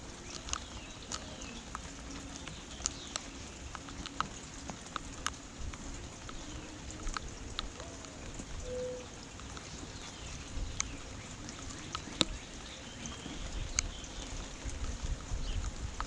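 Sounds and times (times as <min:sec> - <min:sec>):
raindrops tapping close by: 0:00.0 - 0:16.0
steady rain: 0:00.0 - 0:16.0
faint bird chirps: 0:07.8 - 0:14.4.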